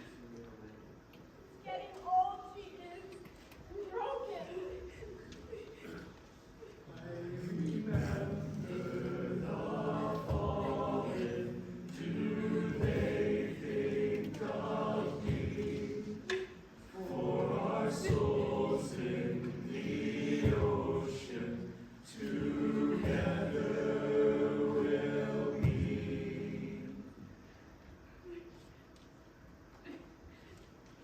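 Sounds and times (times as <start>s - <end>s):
group singing in harmony: 6.8s - 27.6s.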